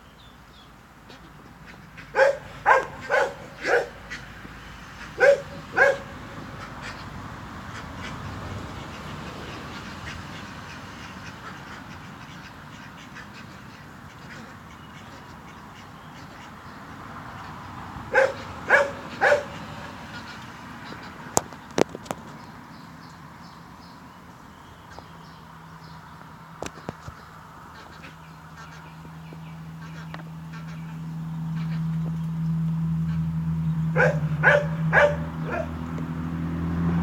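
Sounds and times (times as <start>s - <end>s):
poultry calling: 1.1s - 21.4s, 26.6s - 32.3s, 32.9s - 35.9s.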